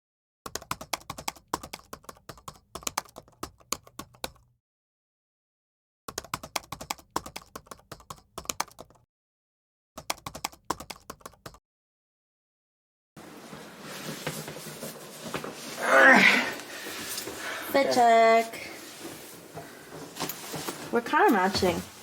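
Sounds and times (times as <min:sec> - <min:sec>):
keyboard typing: 0:00.5 - 0:04.4, 0:06.1 - 0:09.0, 0:10.0 - 0:11.6.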